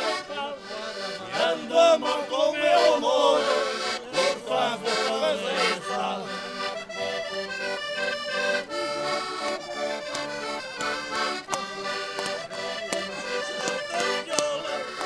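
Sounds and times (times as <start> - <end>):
concertinas playing folk tune: 0.0 - 15.0
sharp clicks: 10.1 - 15.0.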